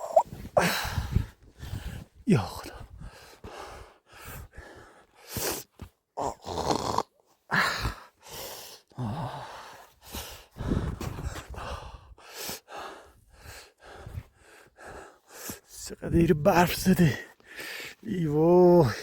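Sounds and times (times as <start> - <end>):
woman breathing and groaning: 0.0 - 2.1, 7.5 - 15.0.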